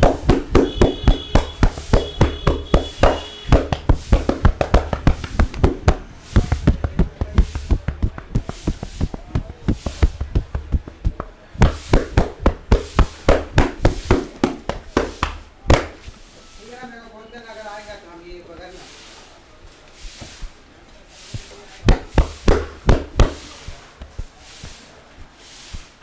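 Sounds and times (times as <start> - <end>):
hands tapping and slapping head: 0.0 - 16.2, 21.3 - 24.8.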